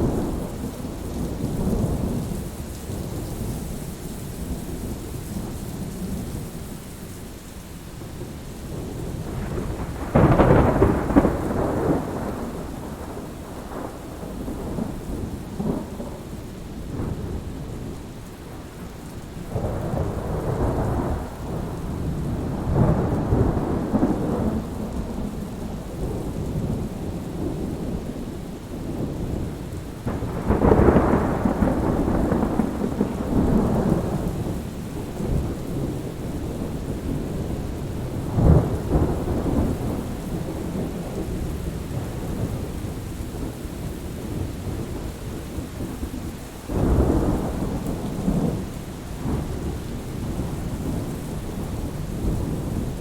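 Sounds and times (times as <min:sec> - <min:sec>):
thunder rumbling: 0:00.0 - 0:06.8, 0:08.0 - 0:53.0
steady rain: 0:00.0 - 0:53.0
sharp thunder crack: 0:09.1 - 0:14.0, 0:30.0 - 0:37.5.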